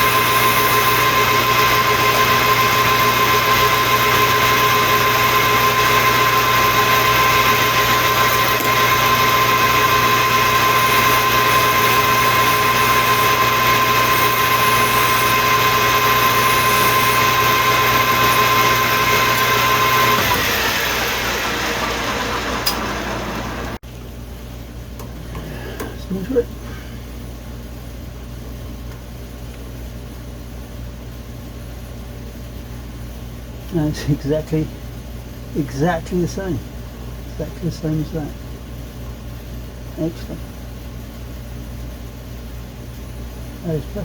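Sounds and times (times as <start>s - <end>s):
metal lathe whining: 0.0s - 23.8s.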